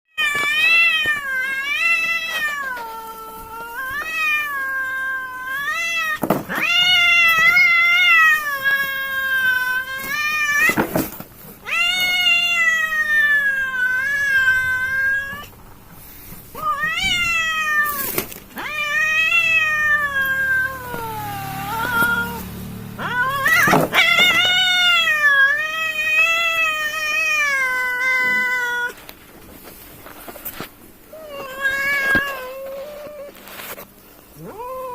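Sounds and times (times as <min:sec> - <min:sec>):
cats yowling: 0:00.2 - 0:15.6, 0:16.4 - 0:29.0, 0:31.1 - 0:33.4, 0:34.3 - 0:34.9
cat growling: 0:11.7 - 0:15.6, 0:16.5 - 0:29.0, 0:34.3 - 0:34.9.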